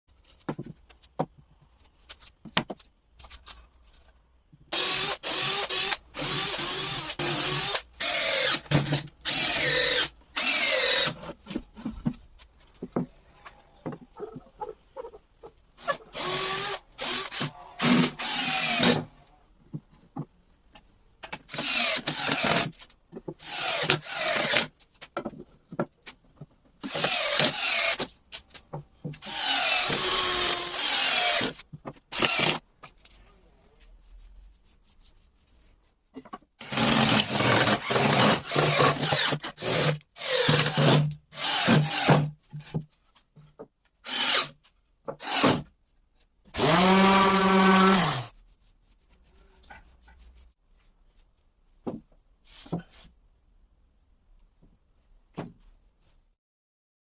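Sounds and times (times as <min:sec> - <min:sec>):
clicks and knocks of wood and tools: 0:00.1 - 0:04.7, 0:24.8 - 0:26.8
woodworking power tools whining: 0:29.2 - 0:32.6, 0:46.6 - 0:48.3.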